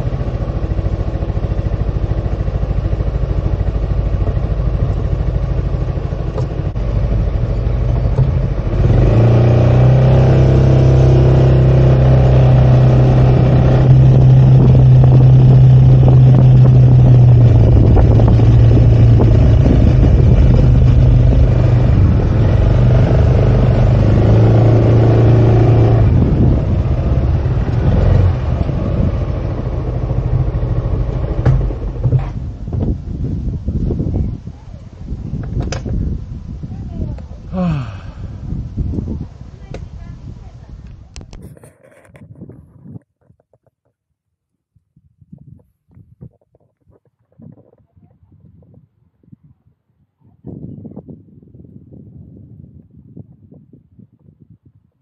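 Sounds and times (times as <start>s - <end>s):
scooter engine running: 0.0s - 42.8s.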